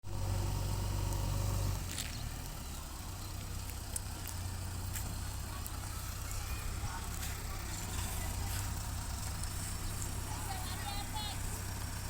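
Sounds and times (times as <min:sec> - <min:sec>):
diesel engine droning: 0:00.0 - 0:12.0.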